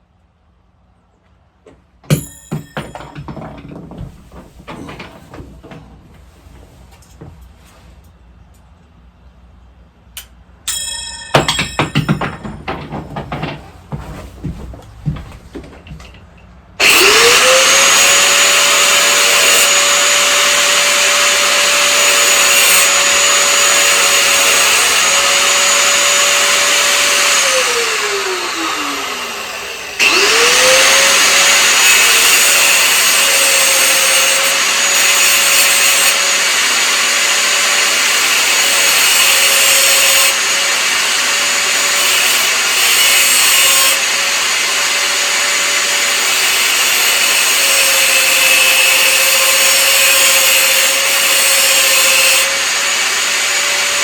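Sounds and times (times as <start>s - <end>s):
power tool motor whining: 16.8s - 54.0s.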